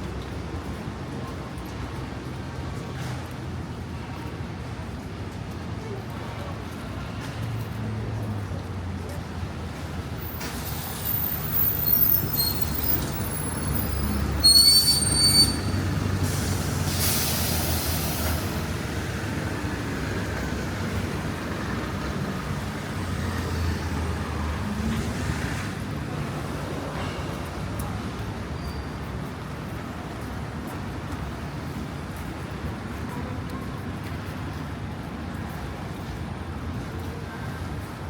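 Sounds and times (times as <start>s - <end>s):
train rumbling on tracks: 9.2s - 38.0s
train wheels squealing: 10.2s - 18.4s, 28.5s - 29.1s.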